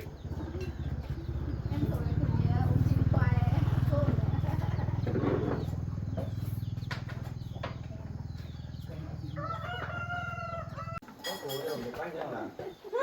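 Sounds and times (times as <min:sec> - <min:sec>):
small engine throbbing: 0:00.0 - 0:11.0
rooster crowing: 0:09.2 - 0:11.0.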